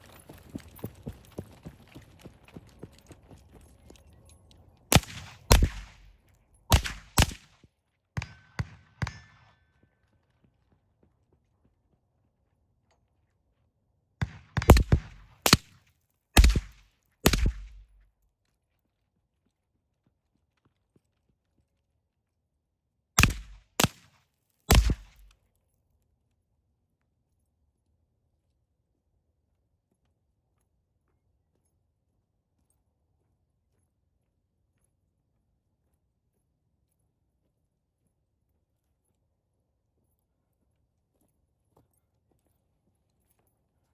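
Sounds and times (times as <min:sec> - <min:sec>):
suppressed rifle shots: 0:04.9 - 0:06.1, 0:06.7 - 0:07.5, 0:14.2 - 0:15.7, 0:16.4 - 0:18.0, 0:23.2 - 0:24.0, 0:24.7 - 0:25.3.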